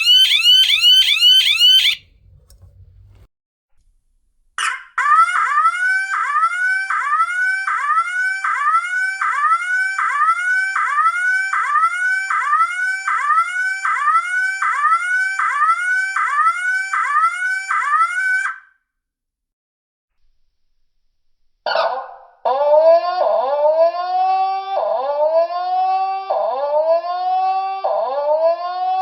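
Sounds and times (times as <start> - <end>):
piezo siren whooping: 0.0 - 2.0, 22.7 - 29.0.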